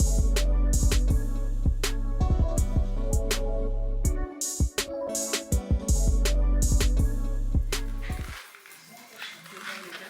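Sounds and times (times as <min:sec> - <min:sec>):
deep bass line: 0:00.0 - 0:04.3, 0:05.8 - 0:08.2.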